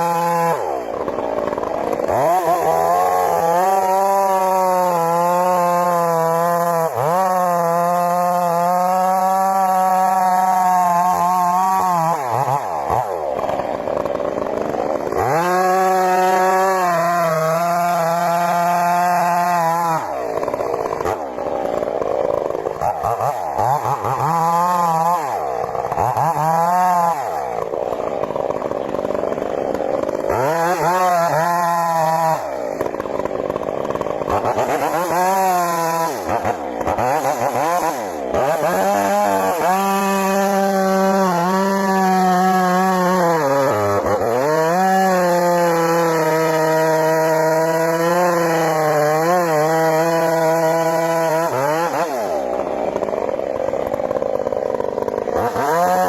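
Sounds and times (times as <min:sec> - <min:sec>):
chainsaw revving and cutting: 0:00.0 - 0:56.0.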